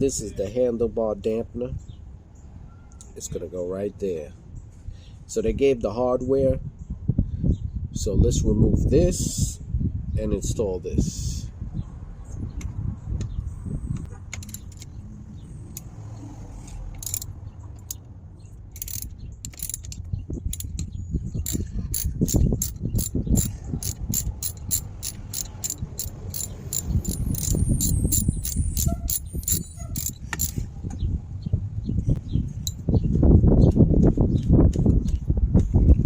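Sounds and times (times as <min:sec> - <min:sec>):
ratchet tool clicking: 0:14.4 - 0:14.9, 0:17.0 - 0:18.0, 0:18.7 - 0:30.6.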